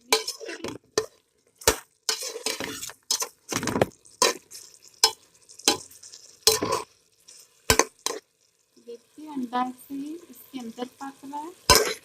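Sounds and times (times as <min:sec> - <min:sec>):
spoon scraping a pot: 0:00.0 - 0:08.3, 0:11.7 - 0:12.0
light sizzling: 0:00.0 - 0:12.0.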